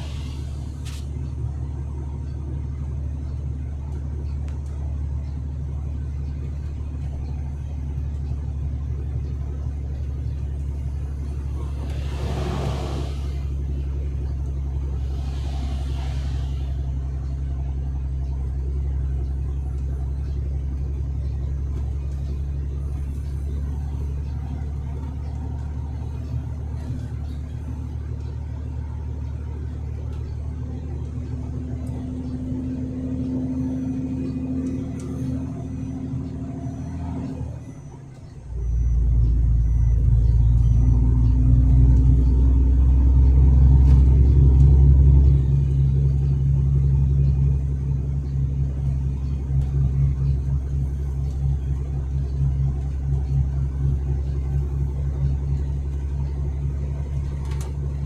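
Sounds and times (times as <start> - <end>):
truck engine and road drone: 0.0 - 58.0
passing vehicle whooshing: 11.2 - 17.6.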